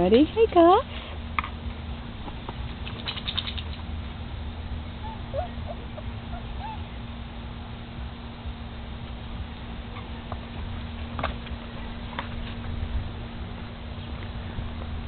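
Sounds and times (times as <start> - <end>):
puppy squeaks and whimpers: 5.0 - 6.8.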